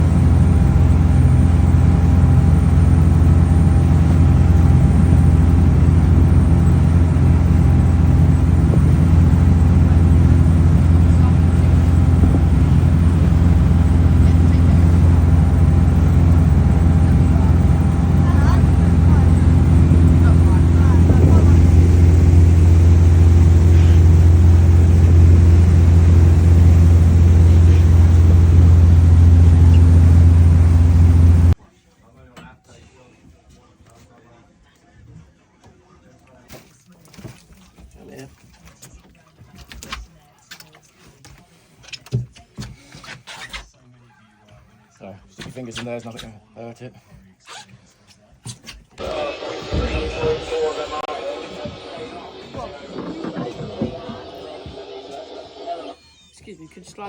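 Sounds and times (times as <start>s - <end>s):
engine droning steadily: 0.0s - 31.6s.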